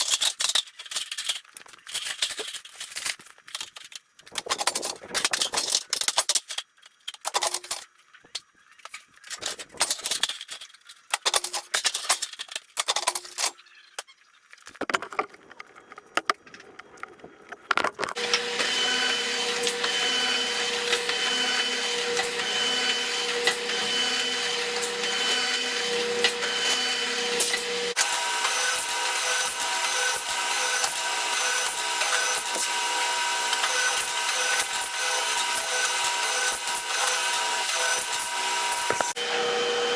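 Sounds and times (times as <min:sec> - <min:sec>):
power tool whining: 0:18.1 - 0:39.9.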